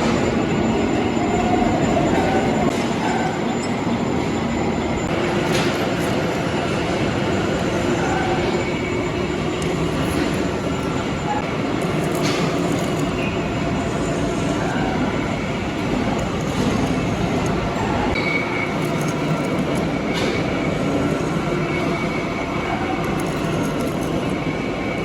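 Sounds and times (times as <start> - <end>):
metal lathe running: 0.0 - 25.0.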